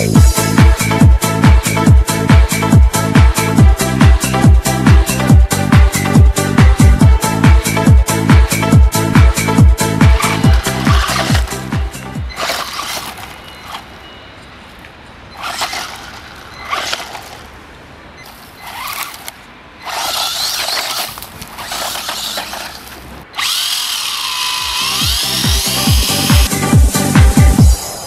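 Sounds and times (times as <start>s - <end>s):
toy car electric motor whining: 10.1s - 11.6s, 12.3s - 13.9s, 15.4s - 17.5s, 18.2s - 26.5s.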